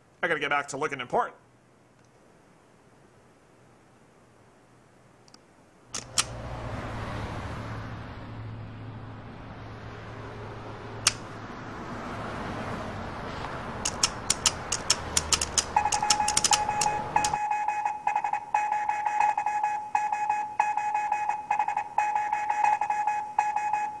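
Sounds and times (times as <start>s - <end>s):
crosswalk button clicking: 11.0s - 11.2s, 13.8s - 17.4s
high electronic beeps: 15.6s - 24.0s.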